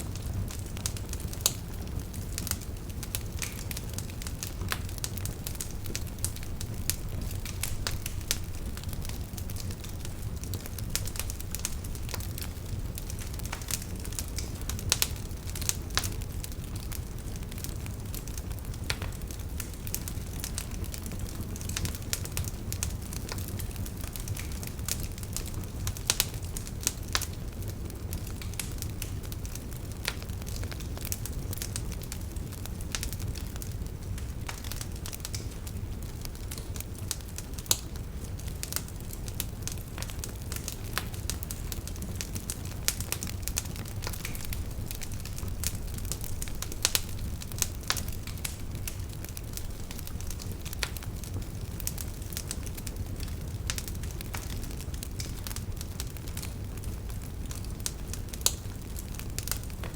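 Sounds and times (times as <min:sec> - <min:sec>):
fire crackling in fireplace: 0:00.0 - 0:59.9.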